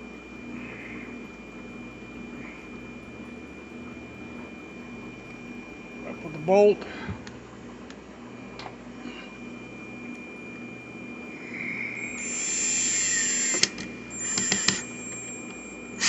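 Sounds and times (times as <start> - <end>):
cordless drill motor whirring: 9.9 - 16.0
drill clutch clicking: 12.2 - 15.6.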